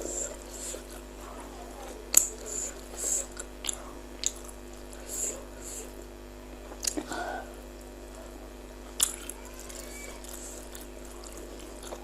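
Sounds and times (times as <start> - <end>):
chewing and wet mouth sounds: 2.0 - 5.9, 6.7 - 7.2, 8.2 - 12.0.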